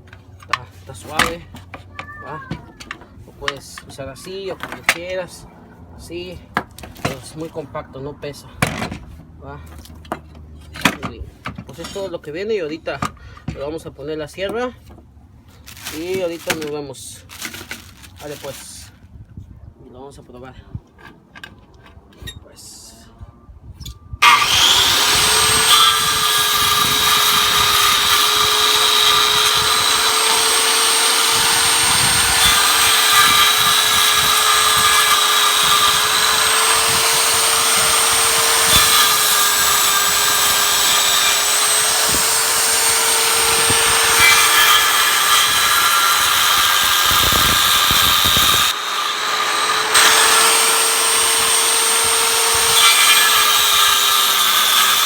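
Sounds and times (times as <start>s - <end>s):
circular saw motor whining: 24.2s - 55.0s.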